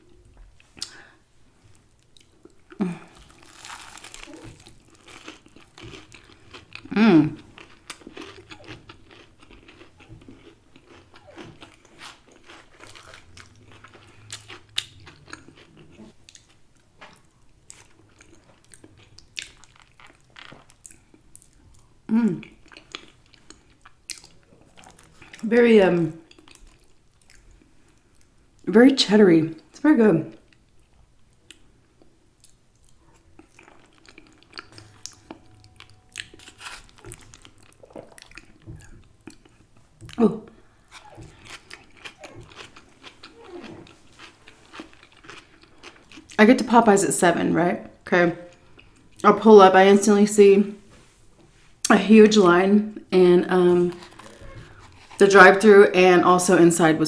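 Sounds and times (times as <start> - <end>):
person chewing food: 0.0 - 25.4, 26.2 - 28.4, 30.5 - 46.4, 53.7 - 55.6
crisp crunches: 2.8 - 6.9, 53.8 - 55.2.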